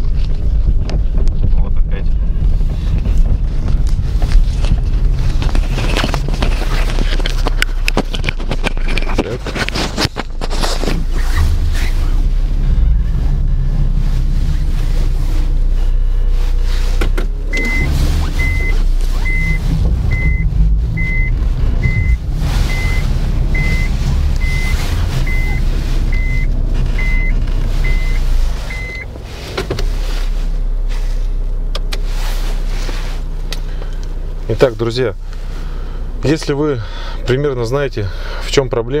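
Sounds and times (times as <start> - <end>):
road and engine rumble: 0.0 - 39.0
car warning beep: 17.5 - 29.1.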